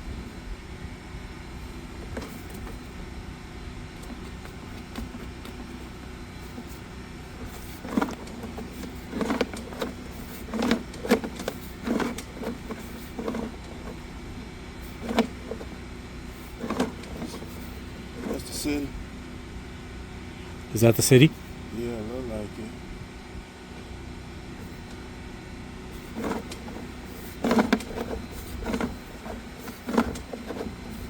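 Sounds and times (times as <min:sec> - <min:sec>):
short knocks and clunks: 0:26.0 - 0:31.0.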